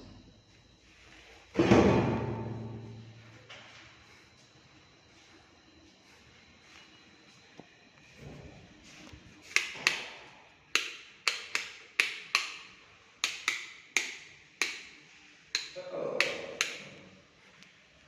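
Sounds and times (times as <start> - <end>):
sharp knocks in echoing room: 1.6 - 3.0.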